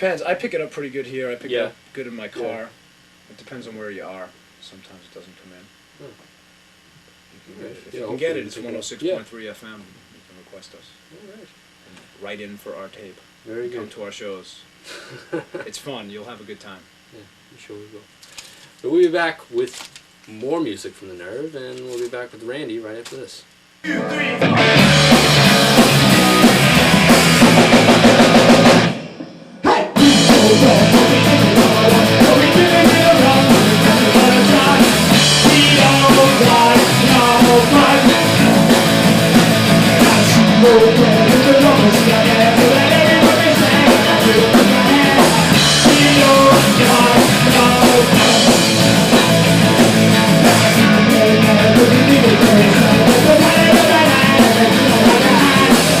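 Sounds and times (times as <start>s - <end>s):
rock band playing: 23.8s - 56.0s.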